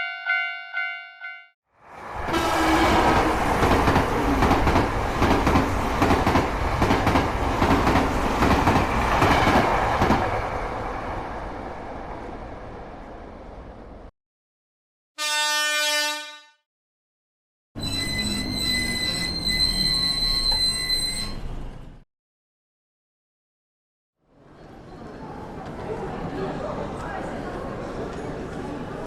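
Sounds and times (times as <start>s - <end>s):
train horn blast: 2.3s - 3.4s, 15.2s - 16.6s
train wheels clattering on rails: 2.9s - 10.3s.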